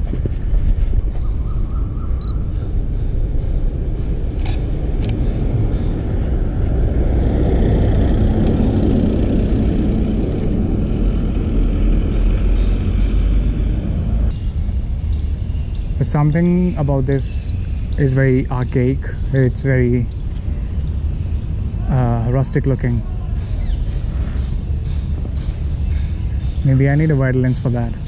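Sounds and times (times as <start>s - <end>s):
steady low rumble: 0.0s - 28.0s
car passing: 2.4s - 23.1s.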